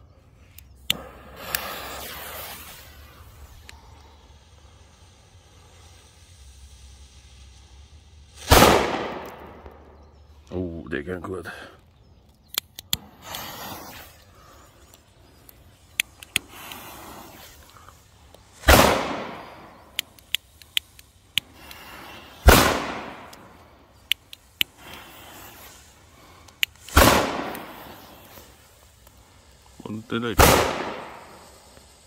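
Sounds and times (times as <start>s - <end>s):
small sharp pops: 0.4s - 4.8s, 11.8s - 29.8s, 30.4s - 32.0s
loud firework bangs echoing: 8.4s - 9.8s, 18.6s - 19.7s, 22.4s - 23.3s, 26.9s - 28.1s, 30.4s - 31.5s.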